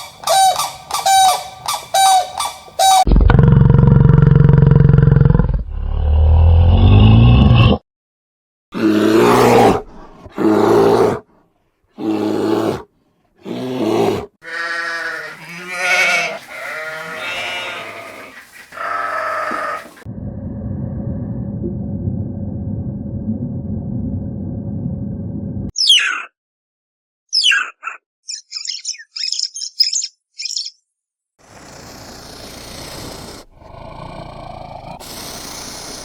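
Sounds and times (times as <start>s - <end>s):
animal calls: 0.0s - 3.1s, 14.4s - 20.1s, 25.8s - 26.3s.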